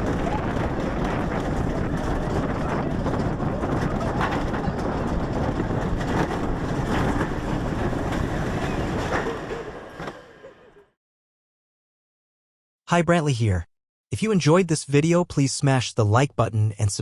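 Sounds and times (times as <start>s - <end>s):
wind noise: 0.0s - 10.1s
coaster car rumbling in trough: 0.0s - 11.0s.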